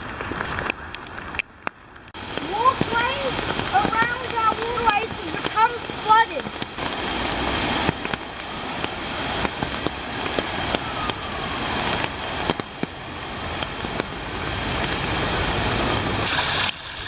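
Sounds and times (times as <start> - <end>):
fast-flowing water roaring: 0.0 - 17.0
sharp clicks and ticks: 0.6 - 6.9.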